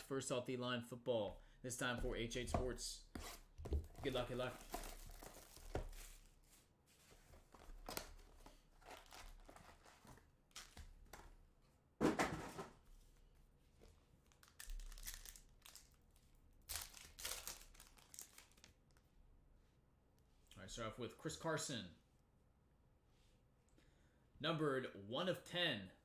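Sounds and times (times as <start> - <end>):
card wrappers crinkling: 4.0 - 6.4, 7.5 - 11.1, 14.2 - 19.0.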